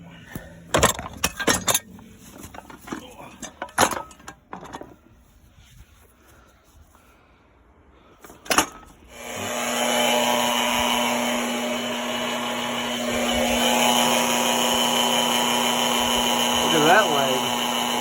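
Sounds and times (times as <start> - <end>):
small electric motor humming: 9.1 - 18.0.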